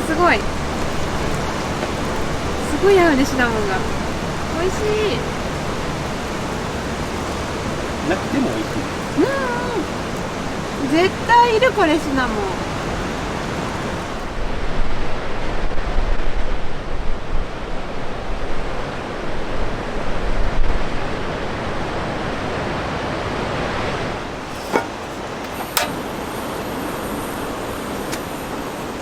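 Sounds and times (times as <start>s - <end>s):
wind buffeting microphone: 0.0s - 15.2s.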